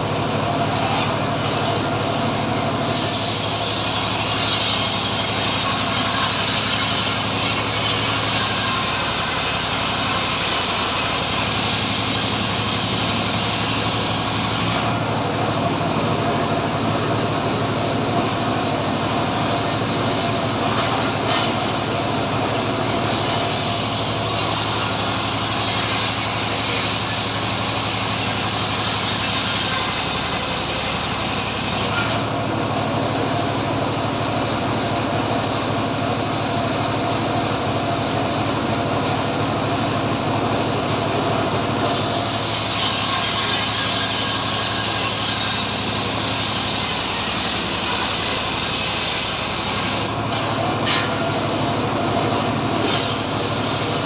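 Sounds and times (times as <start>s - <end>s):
circular sawmill engine running: 0.0s - 54.0s
saw blade cutting log: 2.8s - 15.1s, 19.3s - 21.9s, 22.5s - 32.3s, 41.7s - 54.0s.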